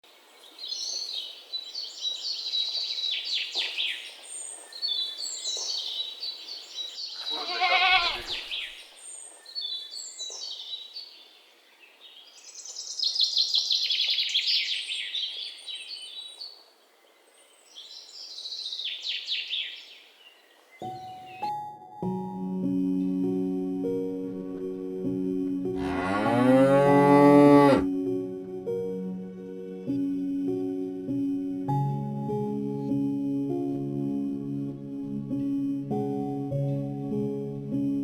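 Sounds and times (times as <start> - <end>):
birds chirping and trilling: 0.4 - 21.6, 25.8 - 27.8.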